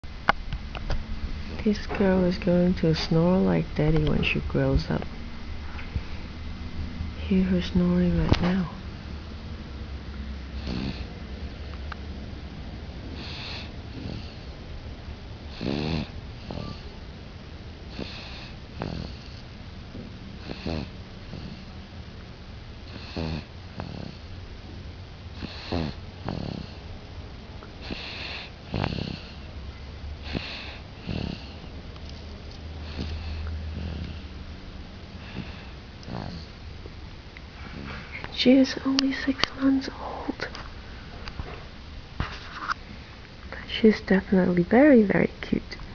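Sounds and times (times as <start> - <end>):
baby snoring: 10.6 - 11.1, 13.1 - 14.5, 15.5 - 16.9, 17.9 - 19.4, 20.4 - 21.7, 22.9 - 24.3, 25.4 - 26.8, 27.8 - 29.5, 30.2 - 31.6, 32.9 - 34.2, 35.2 - 36.6.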